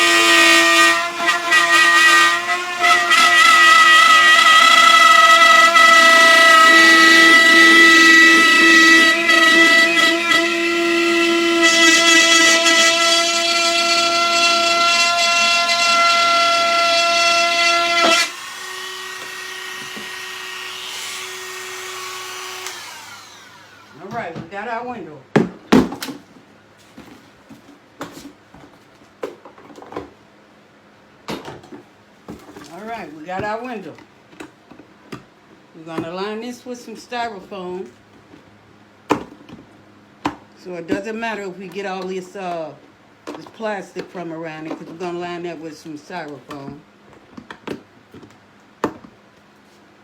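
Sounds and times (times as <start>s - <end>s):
power tool cutting plastic: 0.0s - 24.1s.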